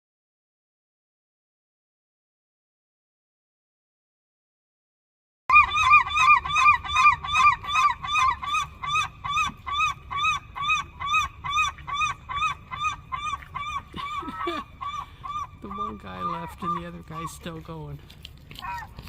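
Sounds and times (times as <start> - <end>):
geese honking: 5.5 - 17.8.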